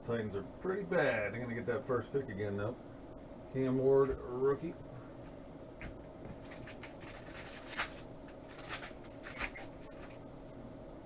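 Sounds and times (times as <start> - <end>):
faint steady hum: 0.0 - 11.0
trading cards flipping: 6.4 - 10.2.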